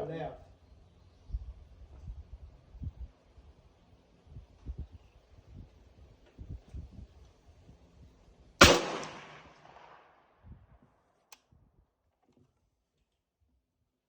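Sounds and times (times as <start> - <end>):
rifle shot ringing out: 8.6 - 10.1
faint click: 11.3 - 11.5.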